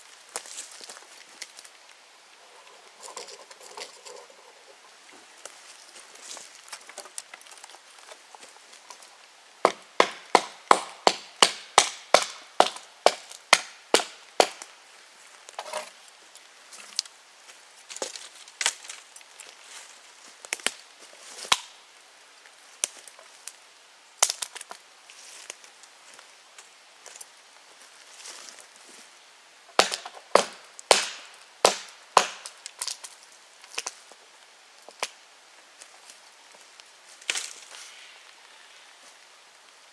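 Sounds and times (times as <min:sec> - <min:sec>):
blade chopping wood: 0:09.7 - 0:14.7, 0:29.8 - 0:32.6.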